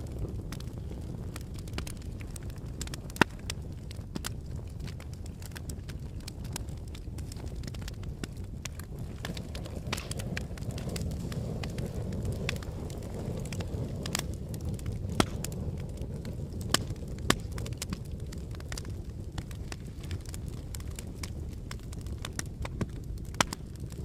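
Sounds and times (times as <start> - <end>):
crackles and pops: 0.0 - 24.0
volcanic low rumble: 0.0 - 24.0
loud cracks: 7.7 - 11.8.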